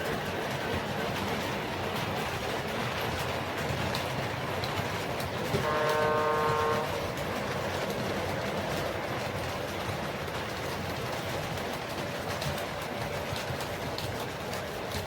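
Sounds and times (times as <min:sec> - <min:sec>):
model train rolling rumble: 0:00.0 - 0:15.0
train horn chord: 0:05.6 - 0:07.0.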